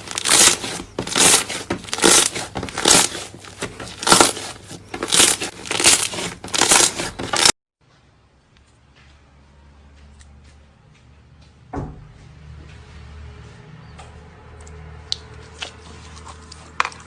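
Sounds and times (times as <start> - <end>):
slime squishing by hand: 0.0 - 7.5.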